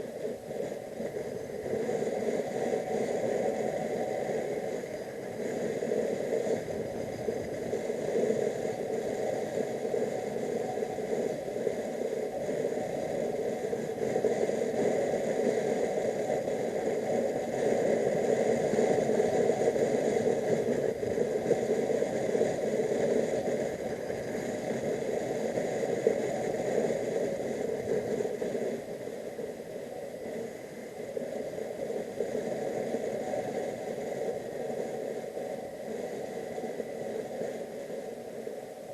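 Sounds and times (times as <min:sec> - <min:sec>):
wind and road noise: 0:03.8 - 0:08.4.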